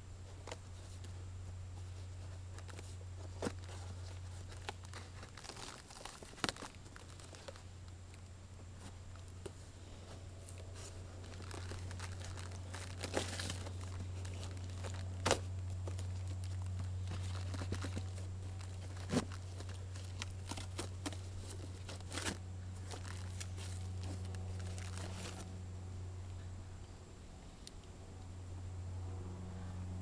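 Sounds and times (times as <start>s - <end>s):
steady low hum: 0.0s - 30.0s
packaging crinkling and tearing: 1.8s - 7.7s, 10.5s - 25.5s.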